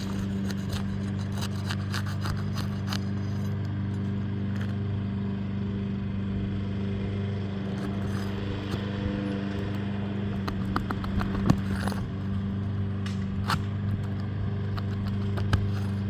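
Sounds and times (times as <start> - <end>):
low machine drone: 0.0 - 16.0
sharp taps and clicks: 7.8 - 15.9.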